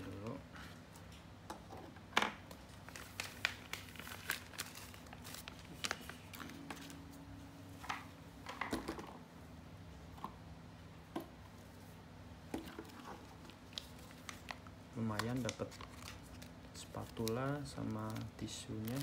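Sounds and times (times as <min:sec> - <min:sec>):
plastic packaging crinkling: 0:02.5 - 0:07.1, 0:12.8 - 0:19.0.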